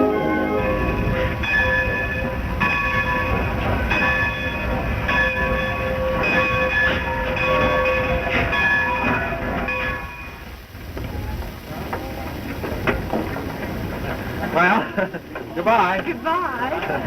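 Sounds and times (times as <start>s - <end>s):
locomotive bell ringing: 0.0s - 10.7s
train rumbling: 0.0s - 17.0s.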